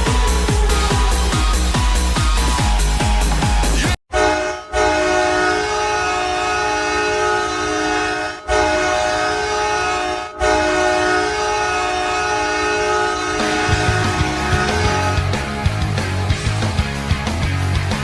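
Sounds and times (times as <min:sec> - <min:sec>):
goal horn blasts: 0:04.1 - 0:15.5.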